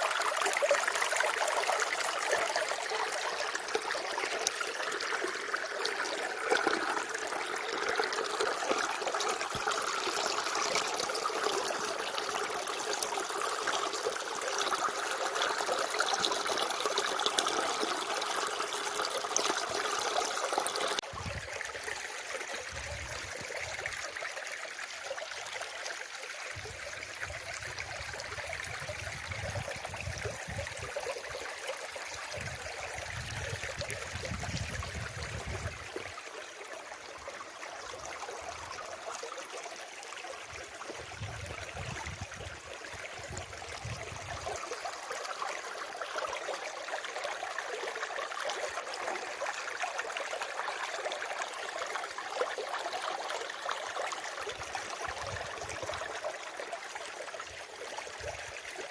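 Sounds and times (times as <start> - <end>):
water running like a stream: 0.0 - 58.9.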